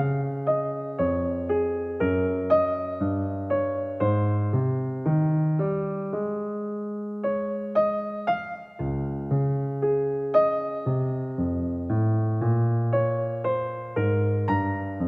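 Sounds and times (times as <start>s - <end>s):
gentle electric piano chords: 0.0s - 15.0s.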